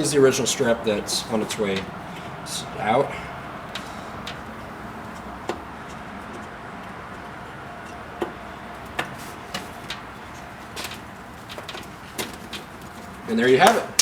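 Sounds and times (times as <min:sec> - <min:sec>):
steady background hiss: 0:00.0 - 0:14.0.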